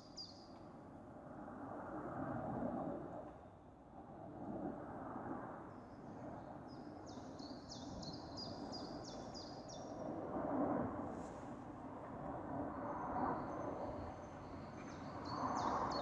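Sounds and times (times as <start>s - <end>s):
songbird singing: 0.0s - 0.6s, 6.7s - 9.9s, 13.4s - 16.0s.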